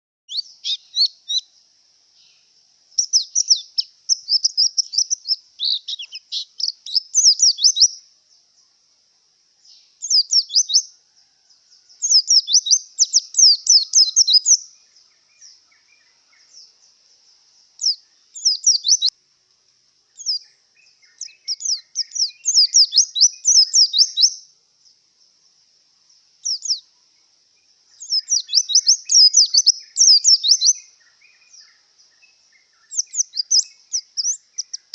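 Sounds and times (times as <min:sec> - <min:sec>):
bird singing high chirps: 0:00.3 - 0:08.8, 0:09.6 - 0:19.1, 0:20.1 - 0:25.0, 0:26.4 - 0:34.9.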